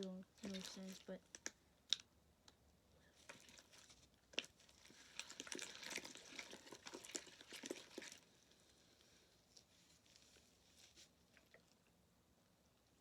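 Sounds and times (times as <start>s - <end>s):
slime squishing and crackling: 0.0s - 2.0s, 3.2s - 8.3s.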